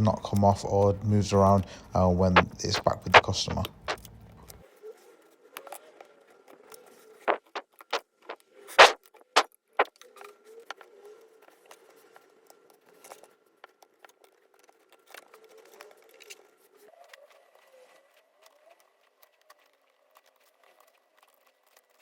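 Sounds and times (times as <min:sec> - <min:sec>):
small tools clicking on laptop: 0:07.3 - 0:07.6.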